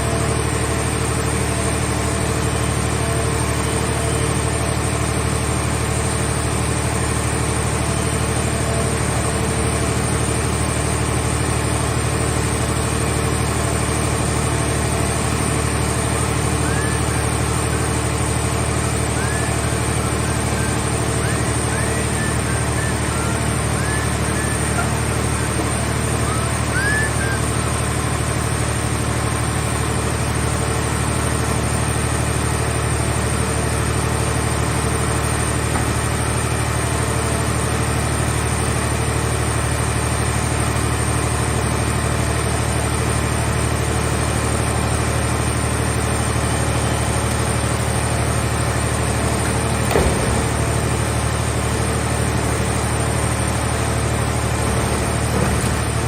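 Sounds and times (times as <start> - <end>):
baler engine running steadily: 0.0 - 56.0
brief knock: 49.8 - 50.6.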